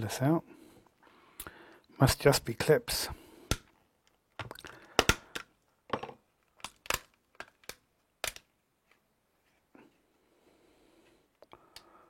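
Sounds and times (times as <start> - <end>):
plastic case clips snapping: 6.6 - 8.5.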